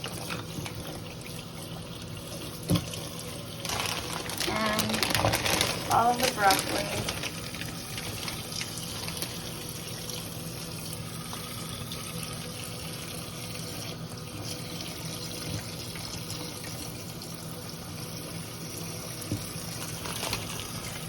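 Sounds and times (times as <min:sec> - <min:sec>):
tap running into sink: 0:02.5 - 0:03.1, 0:19.2 - 0:20.9.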